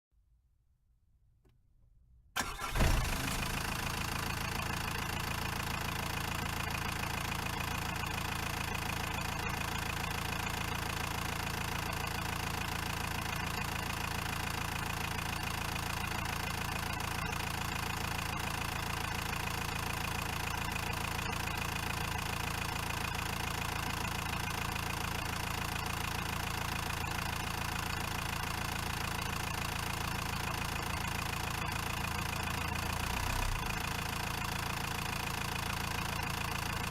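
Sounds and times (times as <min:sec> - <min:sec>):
diesel van engine idling: 0:02.4 - 0:36.9.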